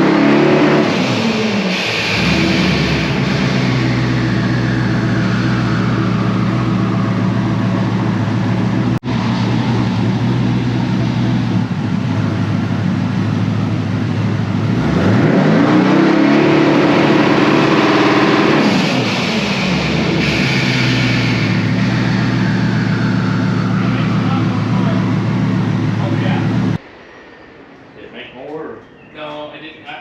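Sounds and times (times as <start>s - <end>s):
car engine running and revving: 0.0s - 26.8s.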